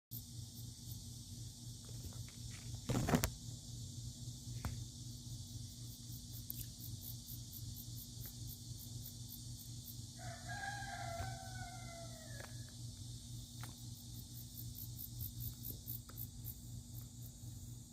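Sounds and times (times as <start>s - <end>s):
cicadas chorus: 0.1s - 17.9s
rooster crowing: 10.2s - 12.8s.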